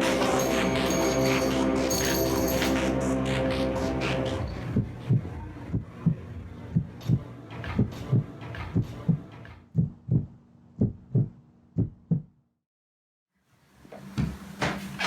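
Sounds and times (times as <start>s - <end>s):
low hum: 0.0s - 12.2s
heartbeat thumps: 4.6s - 12.4s.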